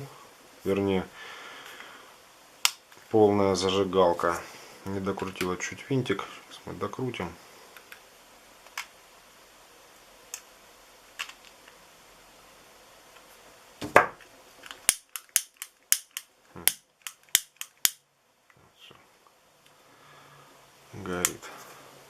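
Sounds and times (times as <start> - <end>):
handling clicks: 14.6 - 18.0.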